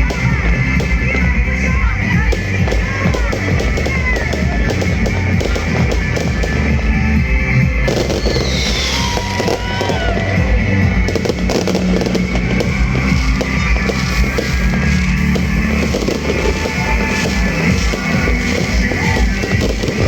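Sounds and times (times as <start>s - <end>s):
fireworks bangs and crackles: 0.0s - 20.0s
loud rock music: 0.0s - 20.0s
whistling glides: 8.0s - 9.8s.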